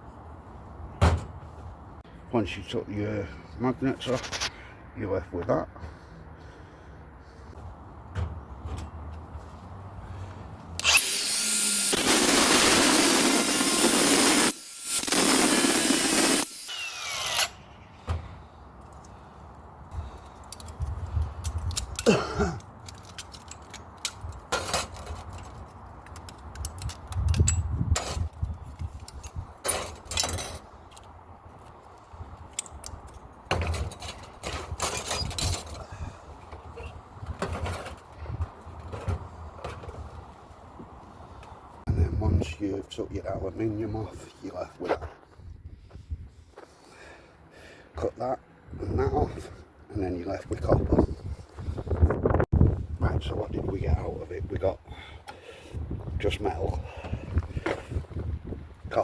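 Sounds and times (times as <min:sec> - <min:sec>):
power tool cutting metal: 0:10.8 - 0:17.7
metal parts clattering: 0:22.8 - 0:28.3, 0:29.0 - 0:30.6, 0:32.6 - 0:35.9.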